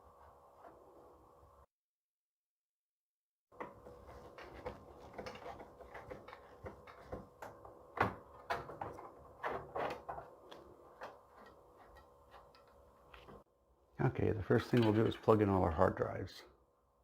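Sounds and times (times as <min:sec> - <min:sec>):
clicks and knocks of computer parts: 0:03.6 - 0:13.4.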